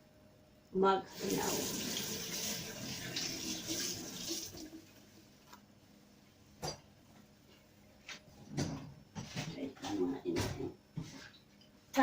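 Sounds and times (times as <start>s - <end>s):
tap water running over hands: 1.2s - 4.8s.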